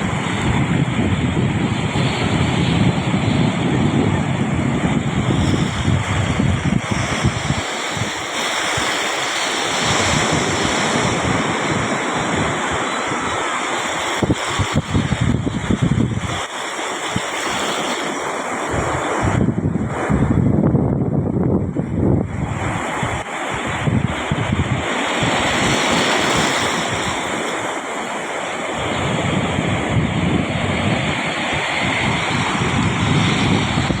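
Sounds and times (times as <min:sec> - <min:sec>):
sea surf washing onto beach: 0:00.0 - 0:34.0
wind buffeting microphone: 0:00.0 - 0:34.0
surf washing onto sand: 0:21.6 - 0:34.0.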